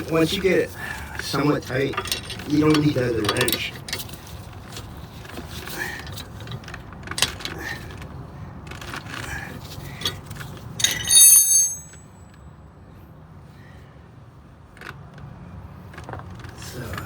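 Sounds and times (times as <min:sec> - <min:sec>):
loud metal clank with ringing: 0:10.8 - 0:12.1
wrenches clinking on metal: 0:10.8 - 0:12.1.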